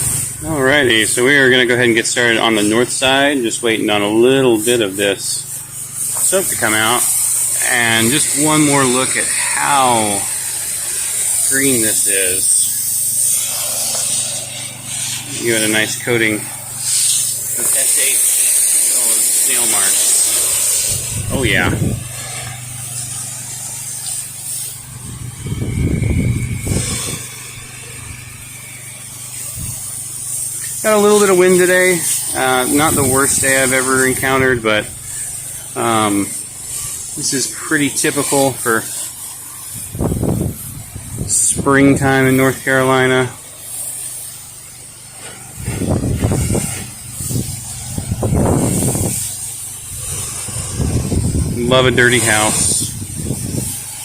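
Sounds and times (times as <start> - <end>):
spray hissing from nozzle: 0.0 - 54.0
spray motor humming: 0.0 - 54.0
wind buffeting microphone: 20.0 - 23.3, 24.8 - 28.5, 29.4 - 30.0, 39.7 - 41.7, 45.5 - 53.9.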